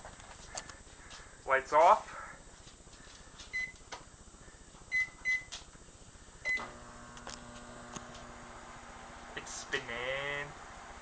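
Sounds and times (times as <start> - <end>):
microwave oven humming: 3.5 - 11.0
microwave keypad beeps: 3.6 - 3.8, 4.9 - 5.5, 6.5 - 6.7.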